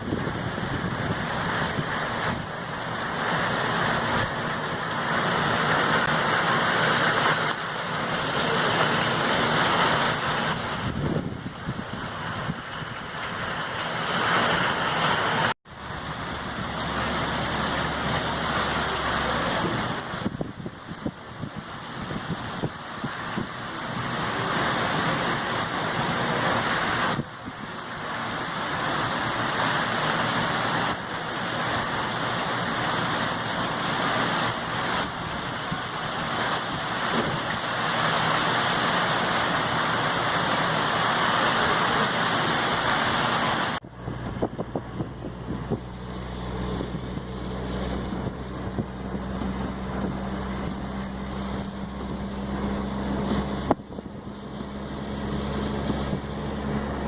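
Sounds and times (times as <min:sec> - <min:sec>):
storm wind rushing: 0:09.6 - 0:13.5, 0:43.8 - 0:57.0.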